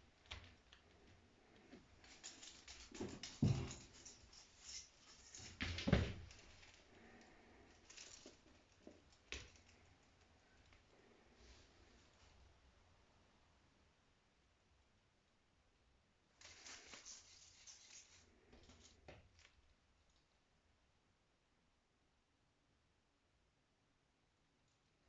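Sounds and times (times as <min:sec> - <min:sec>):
cat scuffling and tapping: 0:00.1 - 0:10.2.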